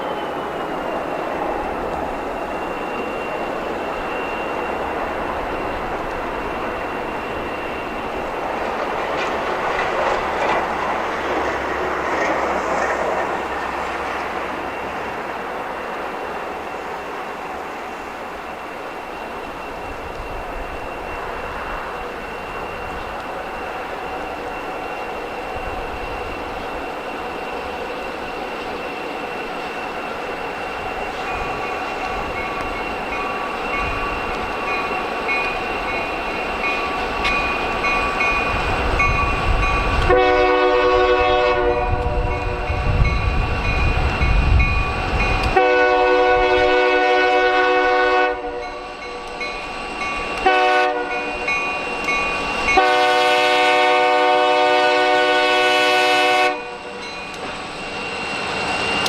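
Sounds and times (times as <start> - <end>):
locomotive horn blasts: 40.0 - 43.0, 45.6 - 48.9, 50.4 - 51.5, 52.7 - 56.9.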